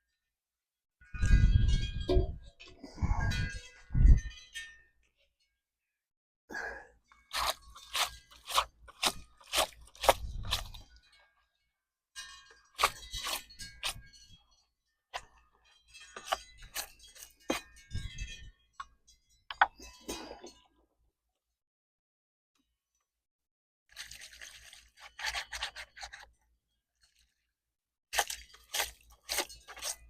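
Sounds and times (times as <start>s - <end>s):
clinks of hard objects: 12.2s - 20.8s.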